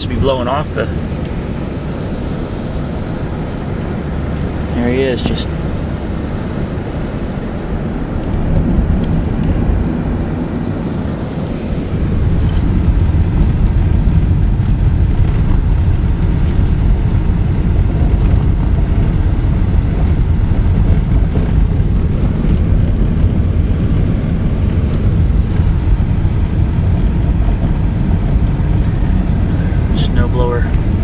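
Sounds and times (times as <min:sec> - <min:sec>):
car engine and tyre drone: 0:00.0 - 0:31.0.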